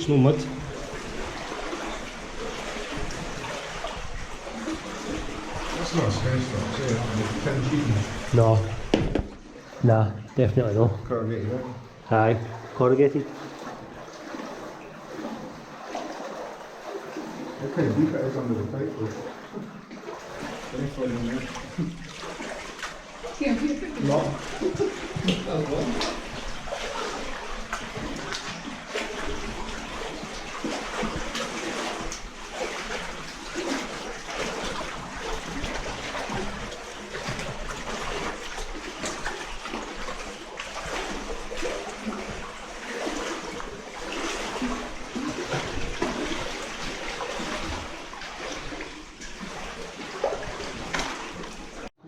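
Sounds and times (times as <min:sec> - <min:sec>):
footsteps splashing in water: 0:00.0 - 0:52.0.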